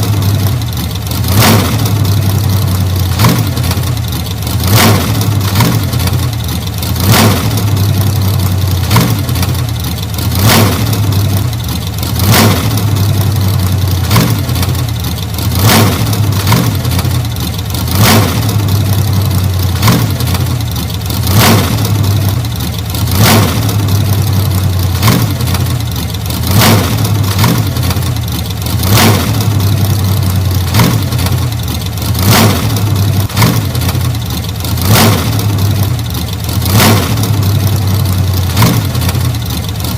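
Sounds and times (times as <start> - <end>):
car engine running steadily: 0.0 - 39.9
sharp crack: 32.2 - 34.2, 36.7 - 39.4.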